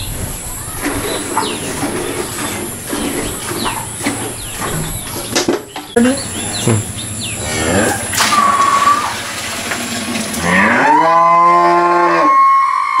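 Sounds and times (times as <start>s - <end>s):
cow mooing: 10.4s - 12.4s.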